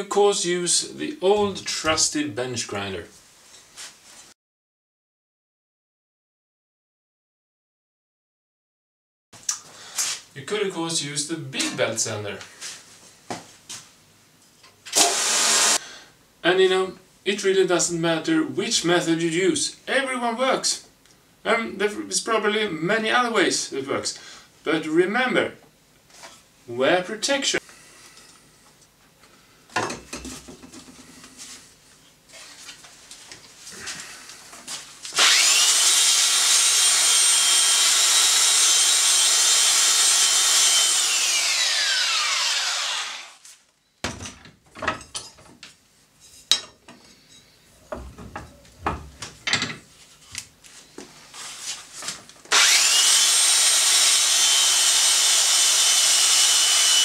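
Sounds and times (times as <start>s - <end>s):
electric sharpener whining: 15.0s - 15.8s, 35.2s - 43.4s, 52.5s - 57.0s.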